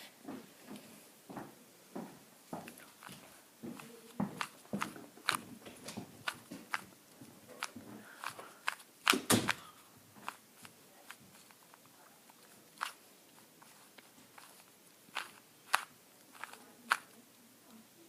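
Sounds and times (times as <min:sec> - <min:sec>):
puzzle cube layers clicking: 0:07.6 - 0:09.6, 0:10.2 - 0:13.0, 0:13.6 - 0:17.2.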